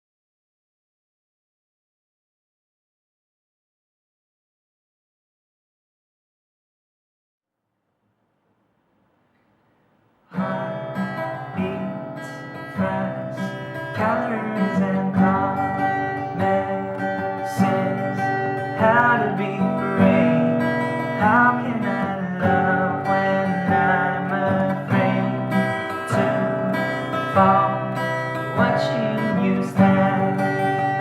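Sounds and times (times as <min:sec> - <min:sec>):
acoustic guitar strumming chords: 0:10.2 - 0:31.0.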